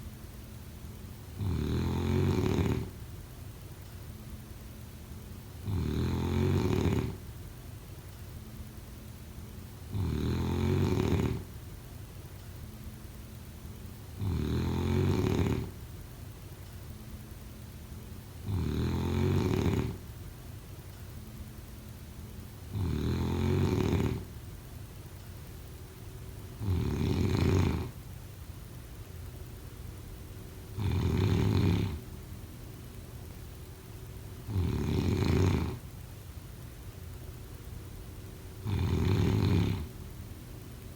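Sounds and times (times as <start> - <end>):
person snoring: 1.4 - 3.0, 5.6 - 7.2, 9.9 - 11.5, 14.2 - 15.8, 18.4 - 20.0, 22.7 - 24.3, 26.6 - 28.0, 30.8 - 32.0, 34.5 - 35.8, 38.6 - 39.9.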